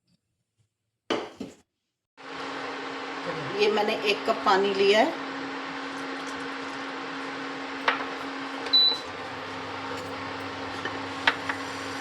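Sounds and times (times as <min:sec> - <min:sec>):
kitchen appliance humming: 0:02.2 - 0:12.0
lower hum: 0:08.4 - 0:12.0.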